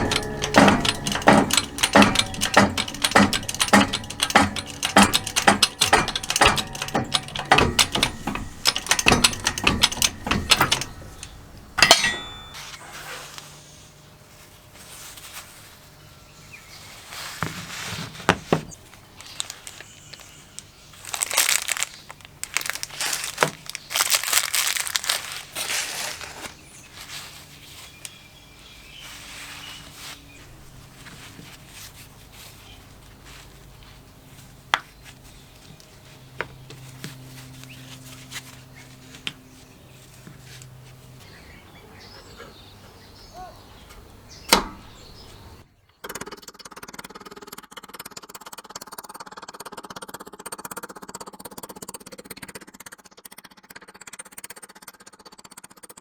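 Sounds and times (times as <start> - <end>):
sharp clicks and knocks: 0.0 - 12.6
rustling and scraping: 16.7 - 41.3.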